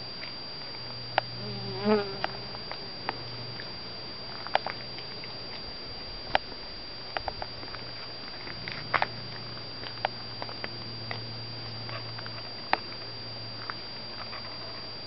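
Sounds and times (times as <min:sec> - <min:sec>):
faint high whine: 0:00.0 - 0:15.0
honeybee buzzing: 0:00.6 - 0:05.6.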